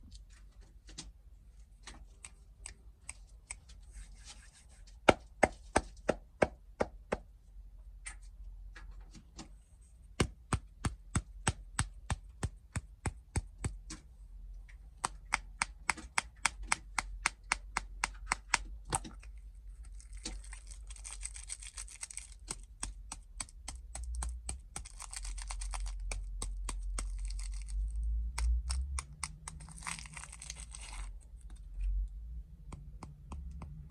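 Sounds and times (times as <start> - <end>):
sharp taps and clicks on packaging: 10.2 - 31.7, 32.7 - 33.9
wrappers crinkling and tearing: 19.8 - 22.7, 24.8 - 28.1, 28.7 - 31.2.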